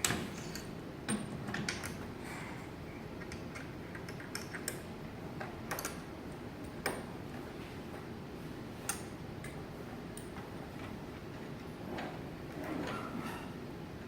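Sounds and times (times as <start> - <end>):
low room hum: 0.0 - 14.0
small parts and tools clicking: 3.2 - 4.8.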